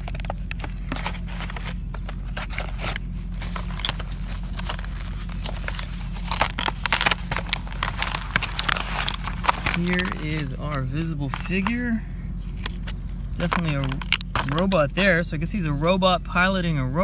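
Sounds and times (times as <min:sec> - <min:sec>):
plastic packaging crinkling: 0:00.0 - 0:14.8.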